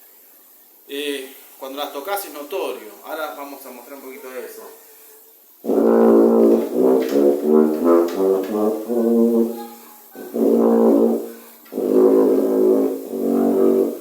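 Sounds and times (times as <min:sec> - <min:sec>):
tuba playing detached notes: 0:05.6 - 0:14.0.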